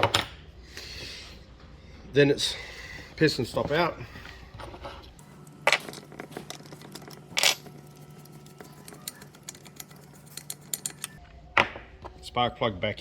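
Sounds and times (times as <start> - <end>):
small metal tools clicking: 6.5 - 11.2.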